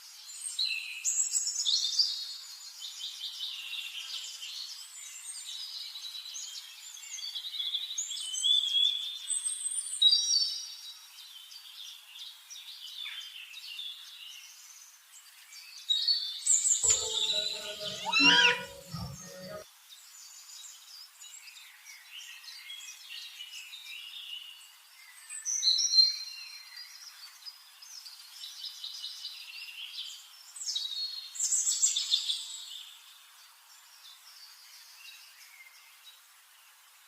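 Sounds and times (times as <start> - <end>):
birds chirping and singing: 16.8 - 19.6
loud whistled bird phrase: 16.9 - 19.6
rapid high bird trilling: 16.9 - 19.6.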